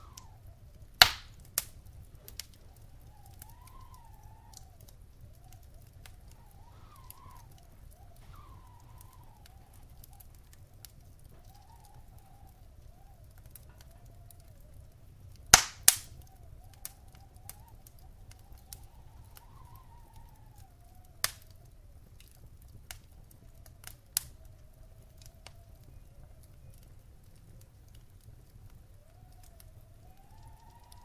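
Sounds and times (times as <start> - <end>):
faint wavering whistle: 0.0 - 0.9, 2.0 - 15.1, 16.1 - 22.0, 24.3 - 27.0, 28.9 - 31.0
wood fire crackling: 0.0 - 31.0.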